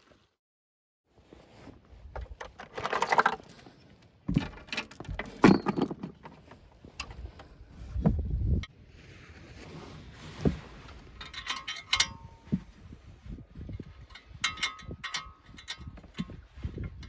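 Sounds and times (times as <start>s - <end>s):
metal tools clattering: 4.4s - 6.3s, 11.2s - 12.5s.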